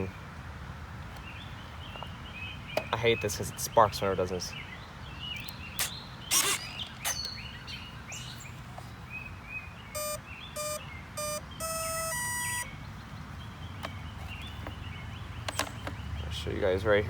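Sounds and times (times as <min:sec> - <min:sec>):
birds chirping: 0:01.1 - 0:17.0
electronic start-up beeps and tones: 0:10.0 - 0:12.7.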